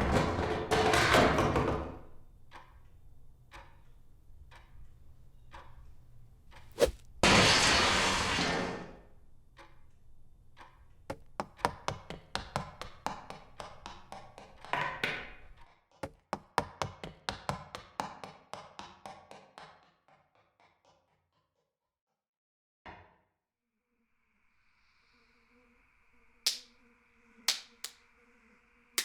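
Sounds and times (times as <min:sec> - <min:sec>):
sharp taps: 0:27.5 - 0:28.0.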